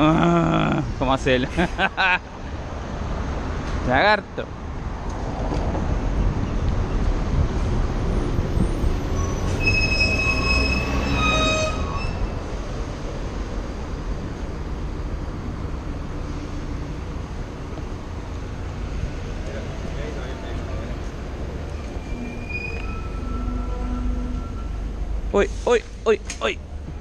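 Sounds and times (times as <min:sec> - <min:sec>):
road rumble: 0:00.0 - 0:27.0
wind buffeting microphone: 0:04.9 - 0:09.2
bicycle brakes squealing: 0:09.0 - 0:12.4, 0:21.8 - 0:24.8.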